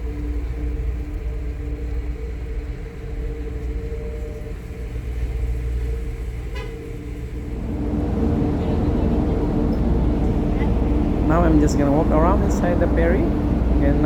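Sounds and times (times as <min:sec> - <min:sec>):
low rumble with hum: 0:07.0 - 0:14.0.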